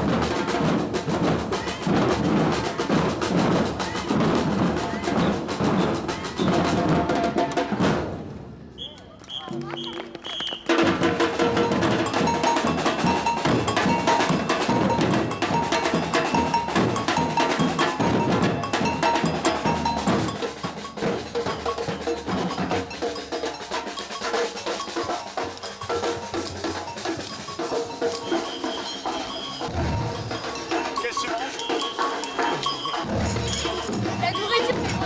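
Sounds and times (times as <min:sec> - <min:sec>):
samba drums and bells: 0:00.0 - 0:08.3, 0:09.4 - 0:35.0.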